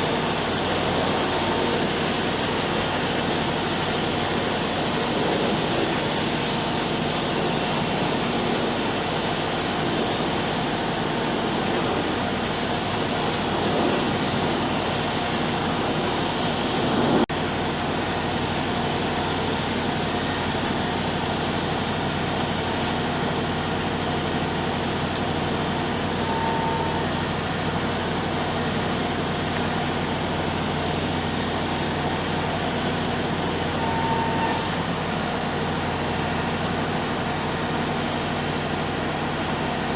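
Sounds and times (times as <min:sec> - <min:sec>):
heavy diesel engine running: 0:00.0 - 0:39.9
short high beeps: 0:26.2 - 0:27.2, 0:33.8 - 0:34.7.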